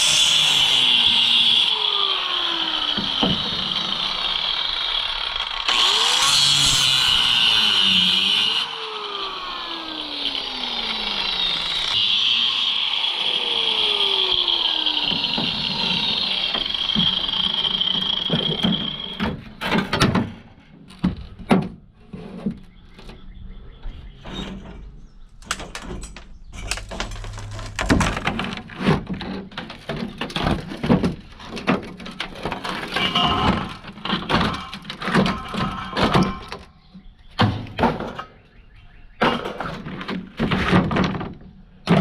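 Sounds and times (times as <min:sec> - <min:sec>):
power tool whining: 0:00.0 - 0:19.6, 0:32.2 - 0:37.0
metal parts knocking and clanking: 0:25.4 - 0:36.8.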